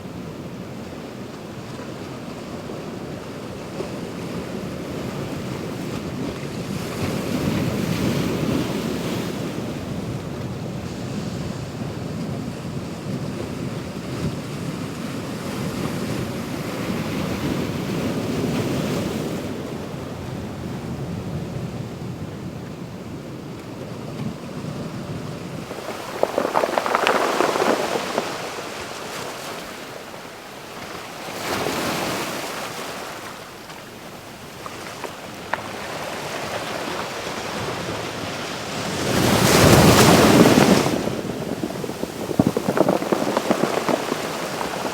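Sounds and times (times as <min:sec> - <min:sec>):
ocean waves breaking: 0:25.4 - 0:44.9.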